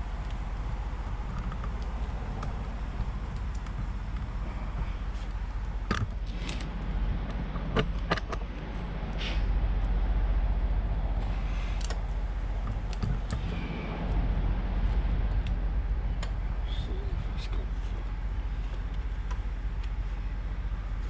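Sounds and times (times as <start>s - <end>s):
low hum: 0.0s - 21.0s.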